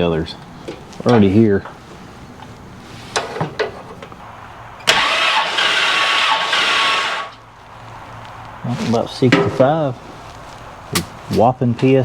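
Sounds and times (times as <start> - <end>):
starter cranking car engine: 4.8 - 7.4.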